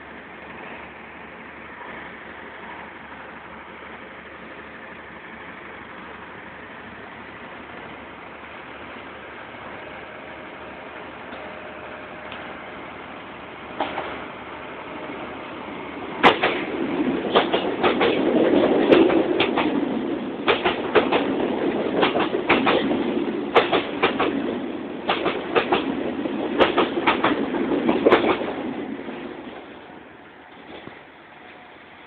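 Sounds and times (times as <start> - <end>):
train rolling rumble: 0.0 - 32.0
train wheels clacking over rail joint: 13.8 - 14.2, 16.2 - 28.7.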